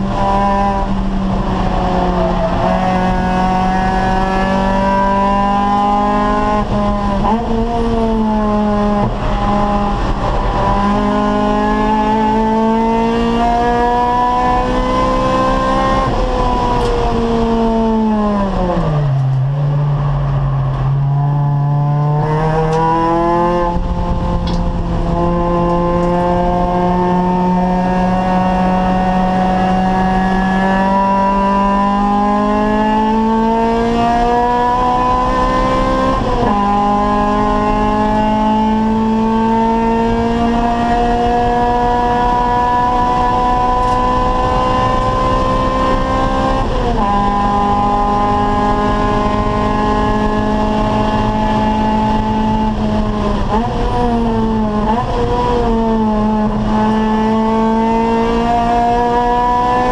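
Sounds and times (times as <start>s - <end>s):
racing car engine revving: 0.0s - 59.9s.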